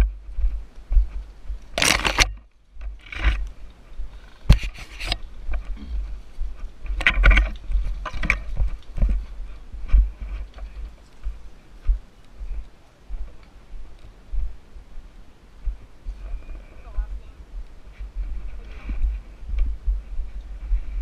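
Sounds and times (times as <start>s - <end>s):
low rumble on microphone: 0.0s - 21.0s
scraping and rustling: 1.1s - 11.6s.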